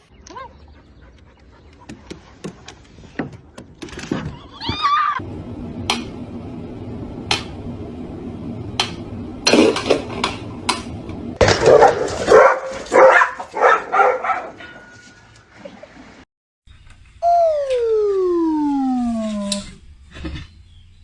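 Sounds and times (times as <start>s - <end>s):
dog barking: 11.5s - 14.6s.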